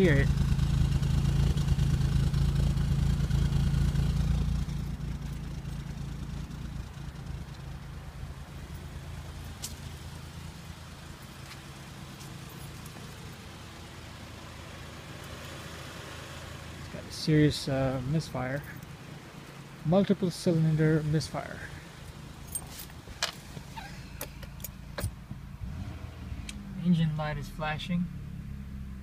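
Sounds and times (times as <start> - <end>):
car exhaust at rough idle: 0.0 - 22.7.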